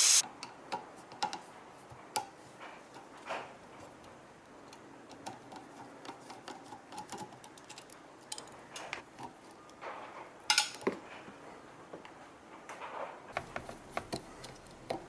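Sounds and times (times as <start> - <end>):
tools and metal parts clicking: 5.1 - 9.3, 10.5 - 10.9.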